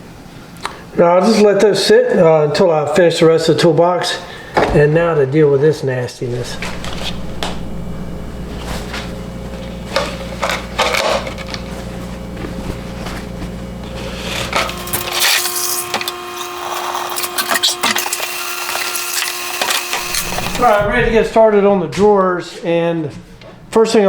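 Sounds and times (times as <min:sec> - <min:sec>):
low machine hum: 0:04.2 - 0:24.0.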